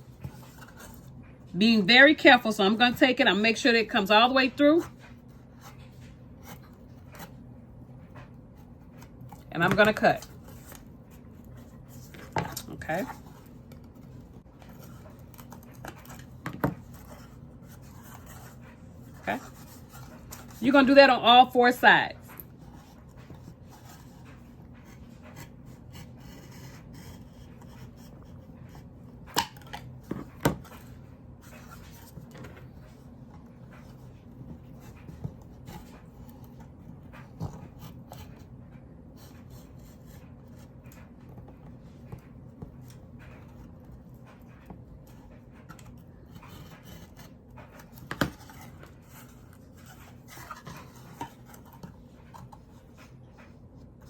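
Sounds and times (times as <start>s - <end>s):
low steady hum: 0.0s - 54.0s.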